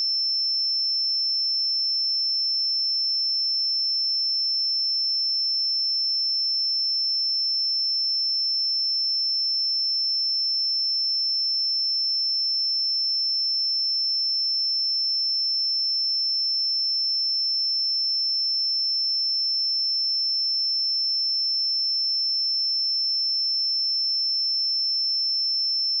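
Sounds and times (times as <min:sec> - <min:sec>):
high-pitched sine-wave test tone: 0:21.9 - 0:26.0.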